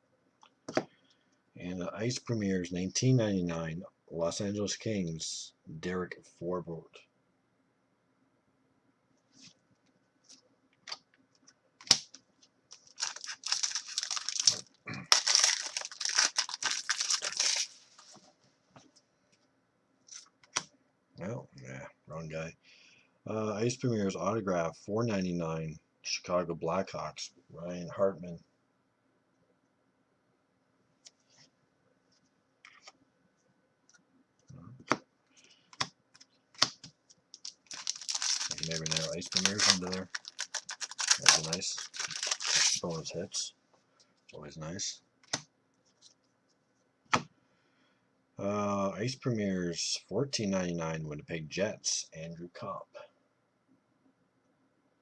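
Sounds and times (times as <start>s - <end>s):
foil card pack crinkling and tearing: 12.7s - 17.8s, 37.4s - 43.0s.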